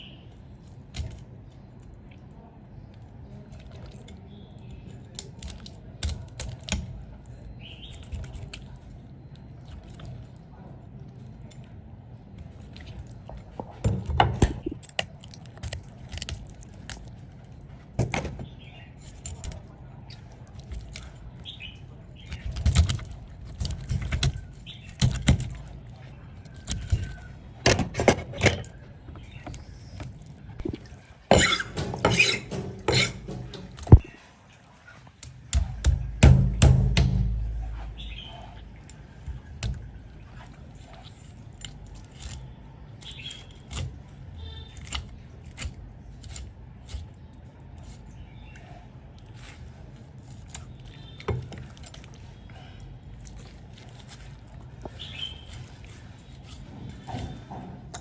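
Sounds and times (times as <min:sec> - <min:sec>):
steady low background hum: 0:00.0 - 0:58.0
kitchen utensils and dishes clinking: 0:30.6 - 0:34.0.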